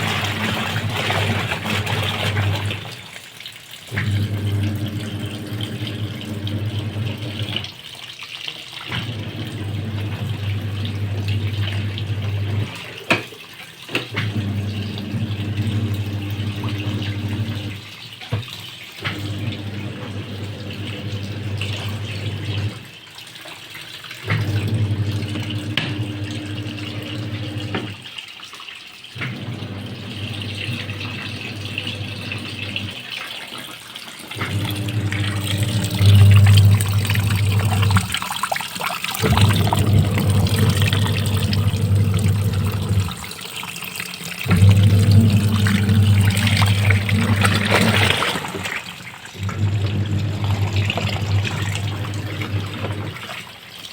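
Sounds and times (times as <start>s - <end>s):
water sloshing: 0.0s - 4.9s, 31.6s - 53.9s
washing machine motor humming: 0.0s - 8.0s, 8.7s - 23.0s, 24.0s - 28.1s, 29.2s - 53.9s.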